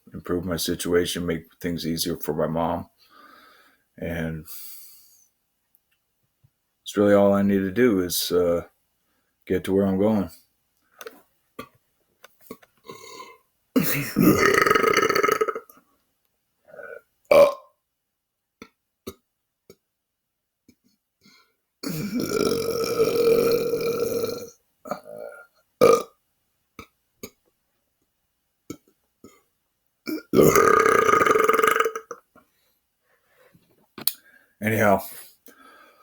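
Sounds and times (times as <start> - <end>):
man belching: 12.9 - 15.8, 16.7 - 17.7, 21.8 - 26.2, 30.1 - 32.3.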